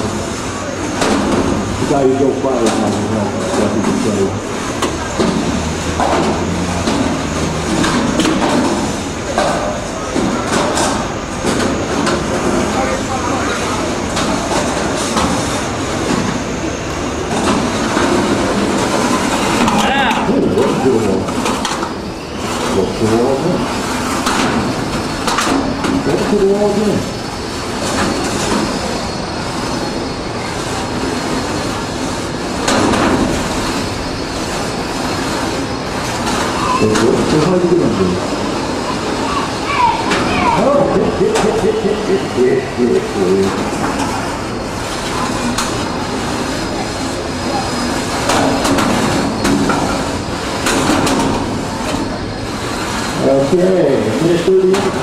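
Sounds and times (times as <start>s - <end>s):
sharp knocks and clatters: 4.8s - 12.7s, 23.9s - 26.4s, 32.6s - 37.5s, 48.0s - 53.1s
background voices: 36.6s - 48.6s.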